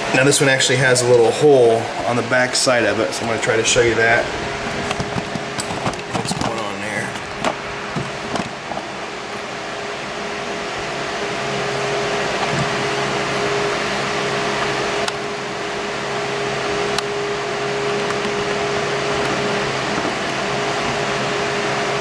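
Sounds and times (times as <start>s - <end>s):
fan machine whirring: 0.0s - 22.0s.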